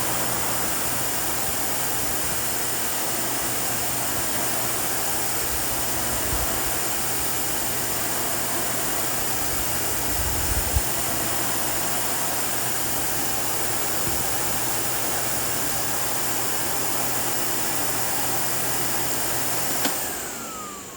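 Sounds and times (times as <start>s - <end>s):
vacuum cleaner running: 0.0s - 20.9s.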